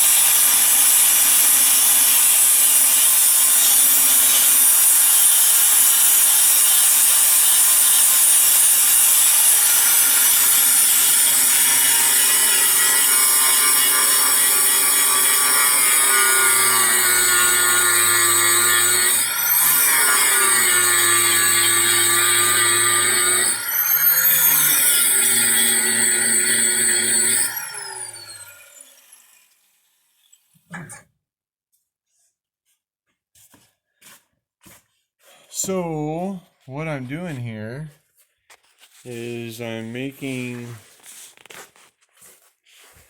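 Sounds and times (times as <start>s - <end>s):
power tool cutting sheet metal: 0.0s - 31.0s.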